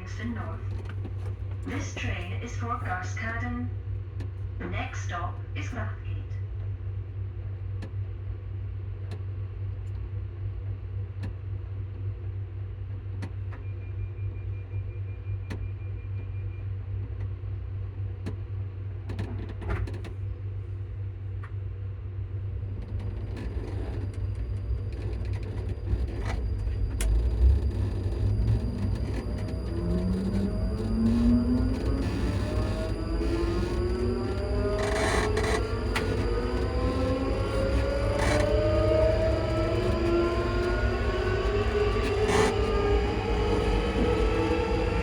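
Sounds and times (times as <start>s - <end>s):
high steady whine: 0.0s - 3.8s, 4.5s - 6.5s, 22.3s - 45.0s
low rumble of train running: 0.0s - 45.0s.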